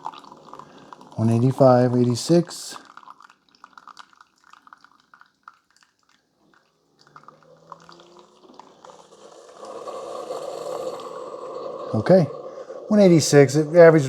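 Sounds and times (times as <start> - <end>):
coffee dripping and sputtering: 0.0 - 14.0
hissing gurgling rush: 8.8 - 14.0.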